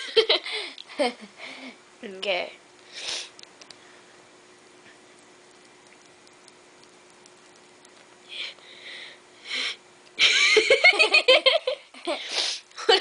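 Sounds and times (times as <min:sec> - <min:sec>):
girl sniffing sharply: 0:12.2 - 0:12.6.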